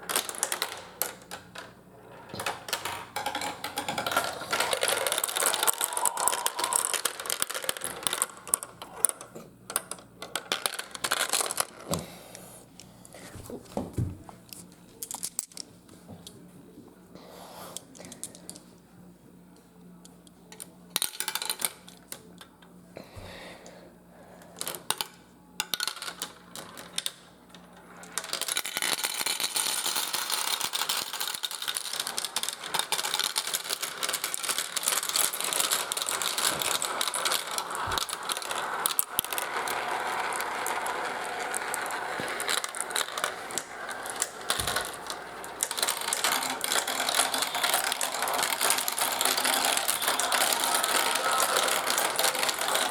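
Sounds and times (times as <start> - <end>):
marbles rattling down plastic track: 0.0 - 1.7, 2.3 - 11.9, 21.0 - 21.9, 24.6 - 52.9.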